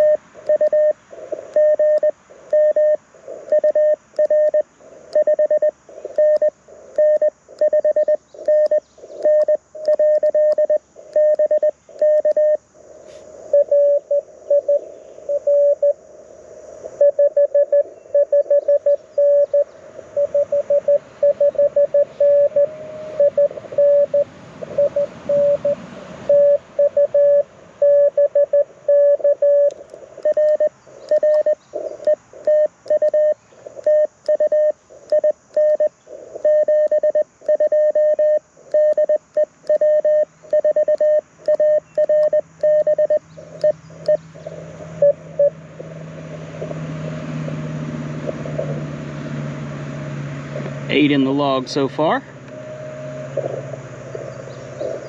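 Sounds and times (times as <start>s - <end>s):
morse code tones: 0.0s - 12.6s, 13.5s - 16.0s, 17.0s - 44.2s, 44.9s - 45.6s
radio band hiss: 5.8s - 7.6s, 12.8s - 13.5s, 50.9s - 52.2s.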